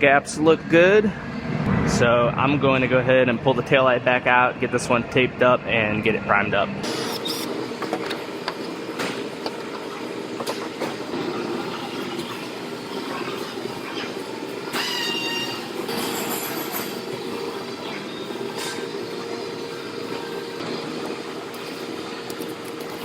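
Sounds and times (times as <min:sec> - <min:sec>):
machine hum: 0:00.0 - 0:23.0
brief high squeals: 0:14.7 - 0:16.4.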